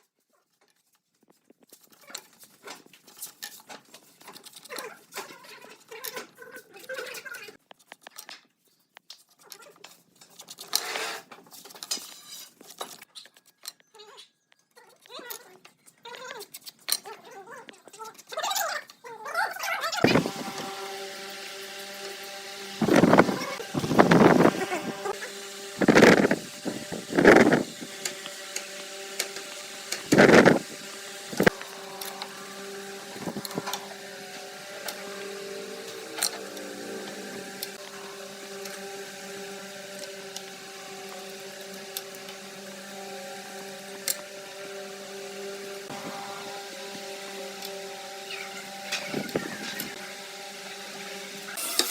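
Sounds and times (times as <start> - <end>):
power tool motor running: 19.9 - 51.9
loud bursts of tool noise: 20.0 - 51.9.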